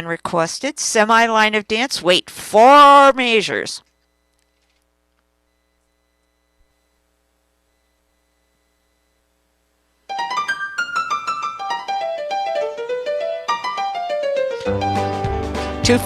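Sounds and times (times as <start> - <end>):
faint hum: 0.0 - 10.2
keyboard melody: 10.1 - 16.0.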